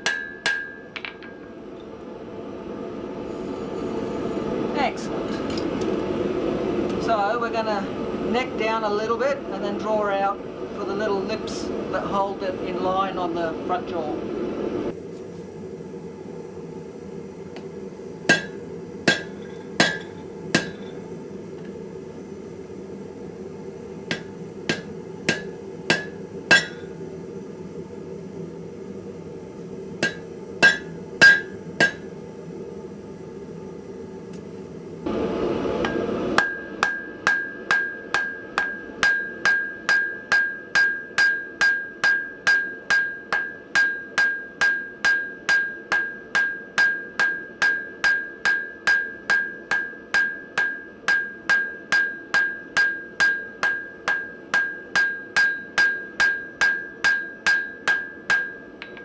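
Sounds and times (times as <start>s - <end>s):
hammer ringing on anvil: 0.0s - 1.5s, 18.3s - 21.0s, 24.1s - 26.9s, 30.0s - 32.1s, 35.8s - 59.0s.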